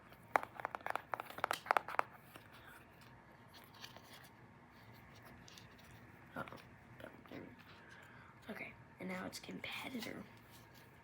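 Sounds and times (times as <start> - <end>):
crisp crackles and clicks: 0.1 - 8.1.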